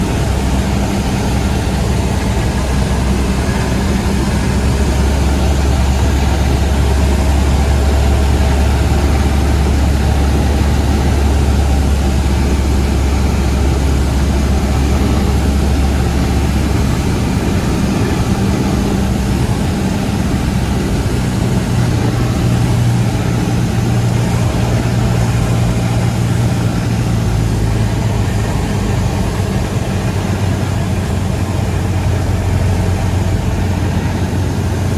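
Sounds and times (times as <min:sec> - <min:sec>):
airplane engine droning: 0:00.0 - 0:34.9.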